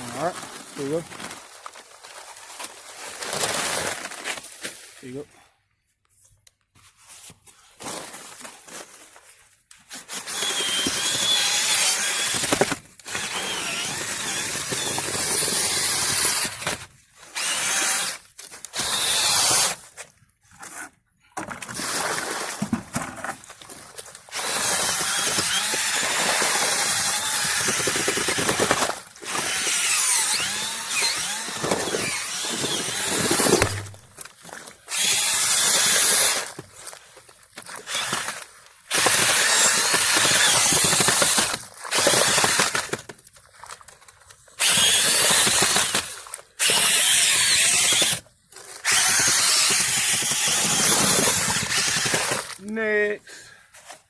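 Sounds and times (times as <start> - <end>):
handheld power tool running: 10.1 - 19.8, 24.3 - 34.0, 37.9 - 42.9, 44.6 - 48.2, 48.8 - 52.6.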